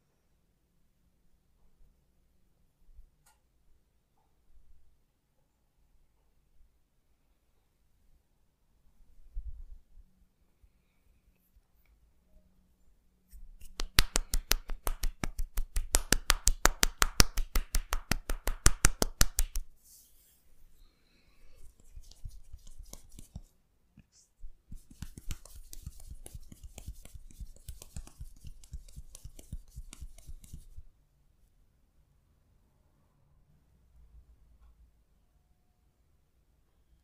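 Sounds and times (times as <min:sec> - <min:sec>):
light pats with rubbing hiss: 0:21.6 - 0:23.5, 0:24.7 - 0:30.9
hands striking the body: 0:24.7 - 0:30.7.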